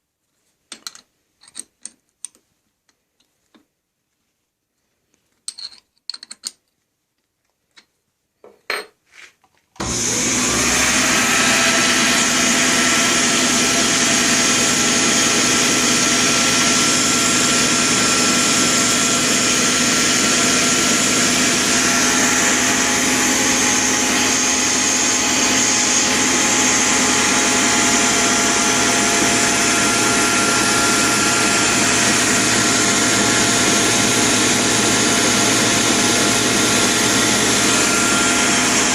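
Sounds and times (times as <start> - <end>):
electric motor whine: 9.8 - 38.9
lathe running: 9.8 - 38.9.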